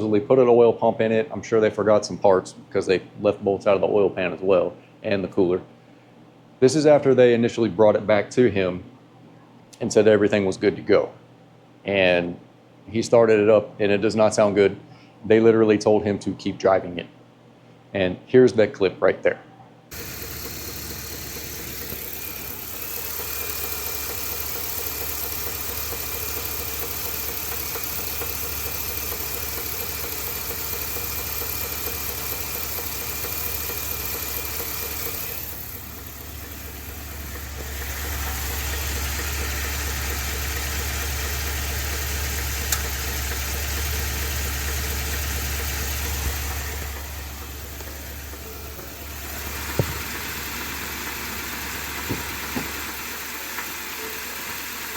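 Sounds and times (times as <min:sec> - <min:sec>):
engine running with internal noise: 0:19.9 - 0:54.9.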